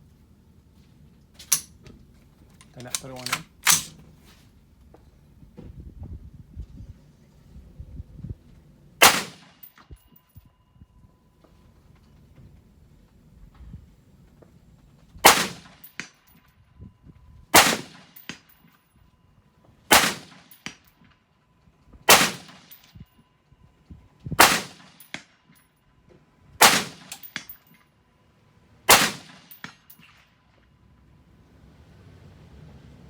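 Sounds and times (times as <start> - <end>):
rifle shots: 2.8 - 4.0, 9.0 - 9.9, 15.2 - 16.1, 17.6 - 18.5, 19.9 - 20.8, 22.1 - 22.9, 24.4 - 25.3, 26.6 - 27.6, 28.9 - 30.1.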